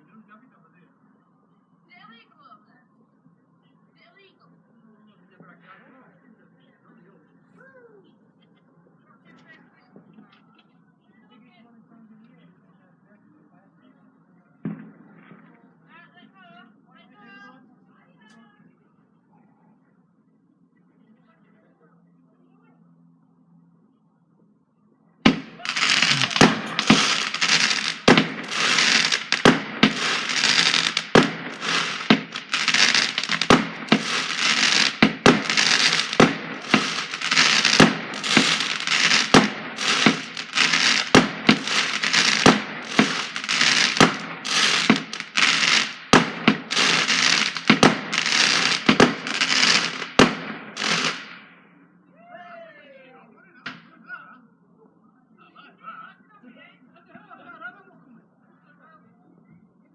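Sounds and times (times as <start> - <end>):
fireworks bangs: 25.3 - 51.5
fireworks crackling and hissing: 25.3 - 51.6.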